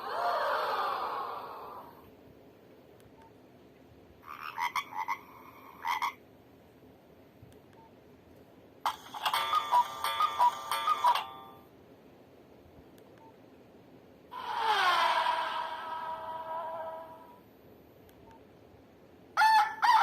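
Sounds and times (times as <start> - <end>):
mobile phone ringtones: 8.9 - 11.6.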